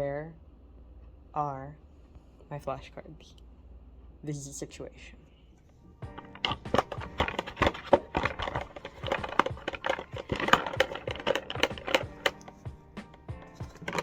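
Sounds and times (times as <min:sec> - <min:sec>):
faint background music: 0:00.0 - 0:14.0
small hard objects clattering: 0:06.1 - 0:14.0.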